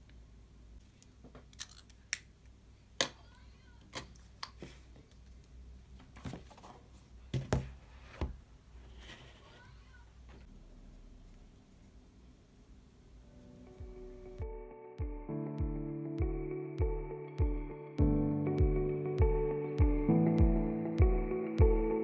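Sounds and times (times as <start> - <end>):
small objects clicking and tapping: 1.0 - 2.3.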